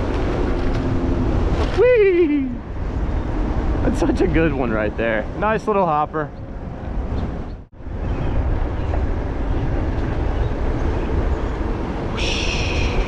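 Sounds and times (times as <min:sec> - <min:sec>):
tyres rumbling over trail: 0:00.0 - 0:13.0
wind buffeting microphone: 0:00.0 - 0:13.0.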